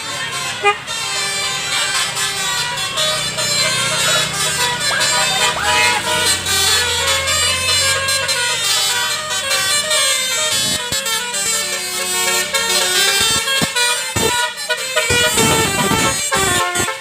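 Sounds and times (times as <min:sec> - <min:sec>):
multi-tone musical car horn: 0:00.0 - 0:17.0.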